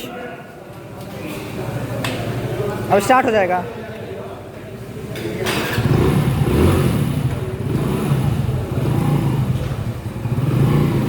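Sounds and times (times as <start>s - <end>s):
motorcycle engine revving: 4.8s - 11.0s.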